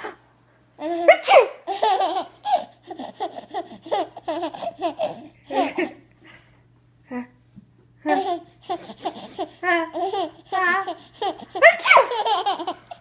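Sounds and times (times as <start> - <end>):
young child laughing: 0.8 - 6.1, 8.1 - 13.0.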